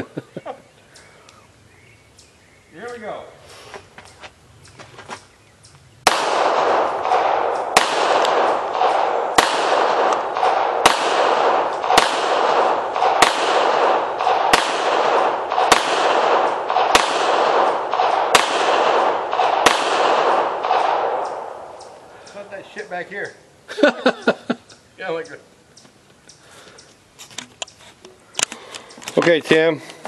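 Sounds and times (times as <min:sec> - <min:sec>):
pistol shots echoing: 0:06.0 - 0:22.0.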